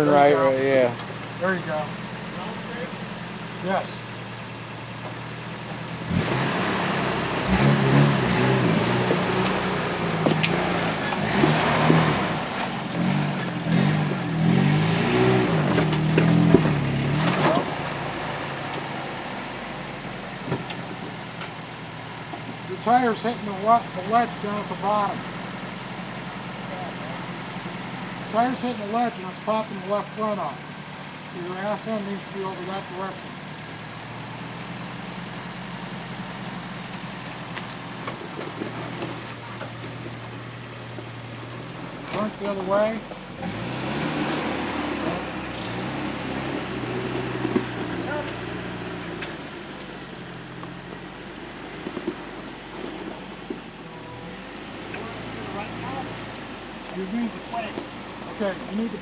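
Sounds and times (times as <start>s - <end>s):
off-road engine revving: 0.0s - 59.0s
tires knocking on rock: 7.4s - 19.0s, 22.2s - 22.7s, 36.5s - 44.7s, 45.5s - 53.9s.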